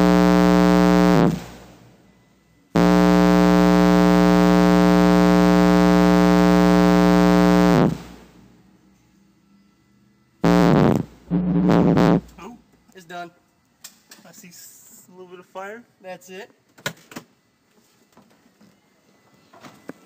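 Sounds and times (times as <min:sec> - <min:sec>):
loud mains buzz from subwoofer: 0:00.0 - 0:08.8, 0:10.4 - 0:12.6.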